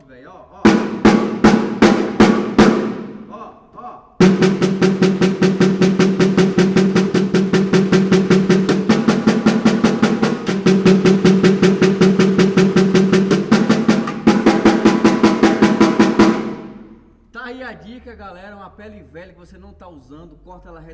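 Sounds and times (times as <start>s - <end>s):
snare drum fast strokes: 0.7s - 3.2s, 4.2s - 16.9s.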